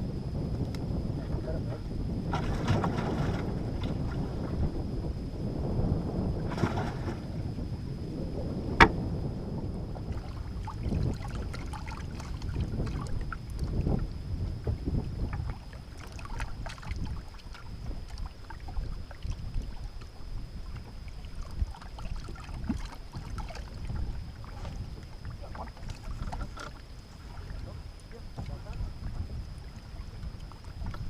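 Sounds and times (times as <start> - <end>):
faint high whine: 0.0 - 31.0
wind buffeting microphone: 0.0 - 31.0.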